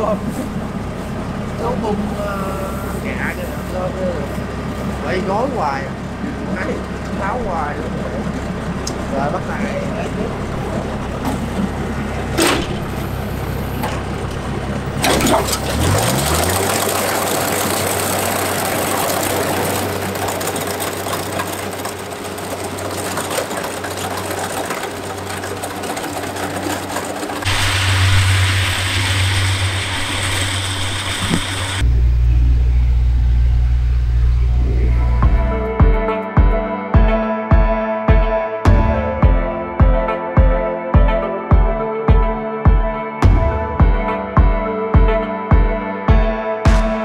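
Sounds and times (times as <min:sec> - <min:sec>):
harvester motor running: 0:00.0 - 0:35.9.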